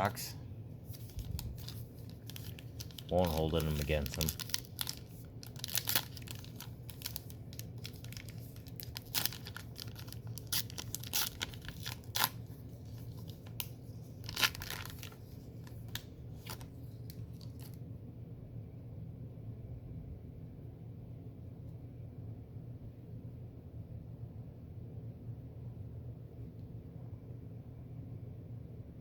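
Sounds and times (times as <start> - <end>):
low steady hum: 0.0 - 29.0
cards rustling: 0.8 - 17.8
wrapper crinkling and tearing: 0.8 - 17.8.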